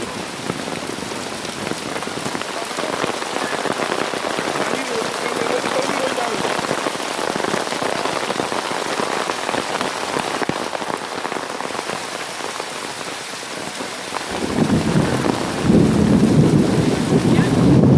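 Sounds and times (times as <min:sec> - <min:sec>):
hail falling: 0:00.0 - 0:17.9
loud low rumble: 0:14.3 - 0:17.9.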